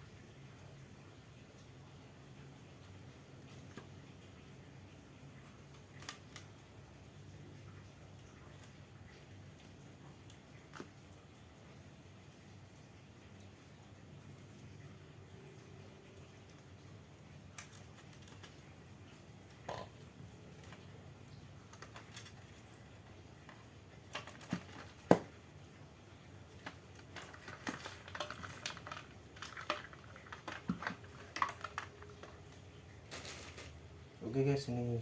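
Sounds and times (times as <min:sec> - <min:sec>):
small parts clicking: 0:26.6 - 0:33.8.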